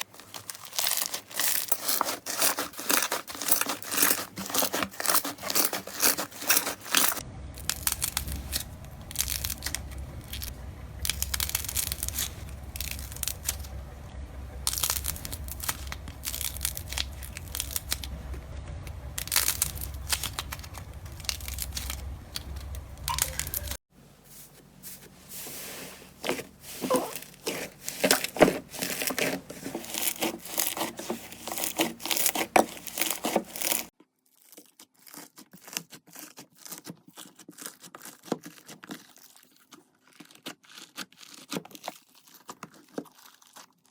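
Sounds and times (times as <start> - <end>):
slime crackling and popping: 0.2 - 13.7, 14.6 - 18.2, 18.9 - 23.8, 26.9 - 43.9
low steady hum: 3.5 - 33.9.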